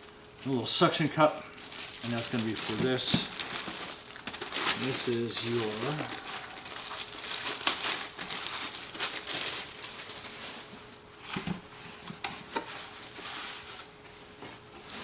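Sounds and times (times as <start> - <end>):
plastic bag crinkling: 0.0 - 10.6.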